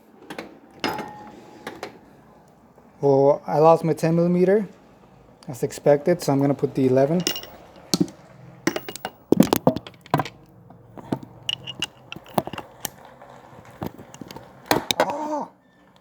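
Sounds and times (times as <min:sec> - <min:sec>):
metal socket clicking: 0:07.2 - 0:10.3, 0:11.1 - 0:13.0, 0:13.8 - 0:15.0.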